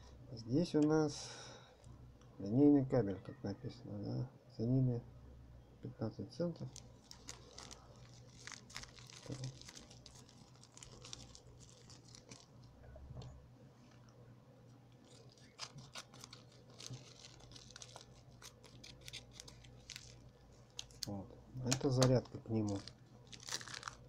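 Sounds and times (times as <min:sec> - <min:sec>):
packaging crinkling: 0:06.6 - 0:12.8, 0:14.9 - 0:24.0.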